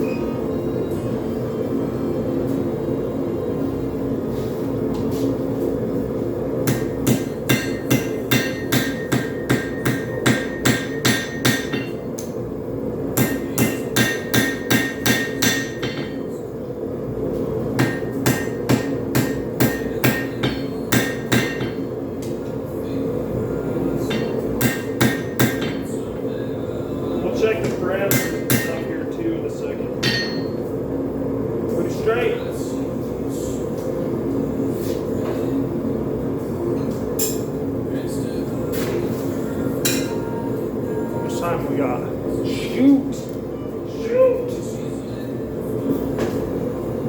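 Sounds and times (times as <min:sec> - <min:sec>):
propane forge roaring: 0:00.0 - 0:47.0
hammer striking metal on anvil: 0:06.7 - 0:12.3, 0:13.2 - 0:16.2, 0:17.8 - 0:21.8, 0:24.1 - 0:25.9, 0:27.6 - 0:28.9, 0:30.0 - 0:30.6, 0:39.8 - 0:40.2.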